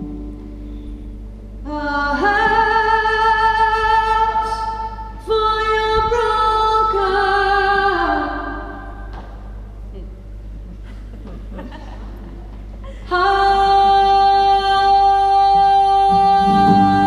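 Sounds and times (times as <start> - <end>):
woman singing long notes: 13.1 - 17.0.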